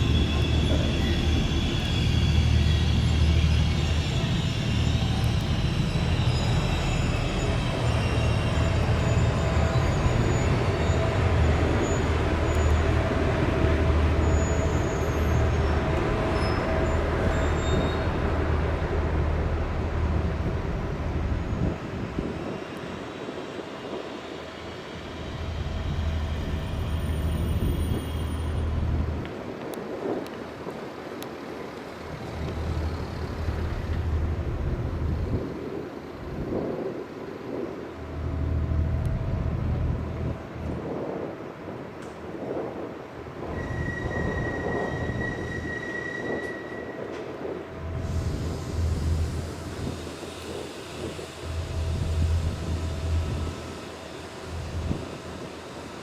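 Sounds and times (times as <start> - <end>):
faint high squeals: 0.0 - 13.1, 14.0 - 18.4, 24.2 - 28.8, 43.4 - 56.0
train engine drone: 0.0 - 56.0.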